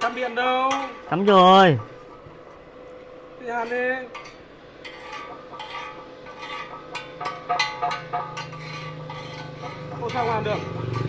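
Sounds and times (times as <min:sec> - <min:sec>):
welding electrode scraping and clicking: 0:03.5 - 0:11.0.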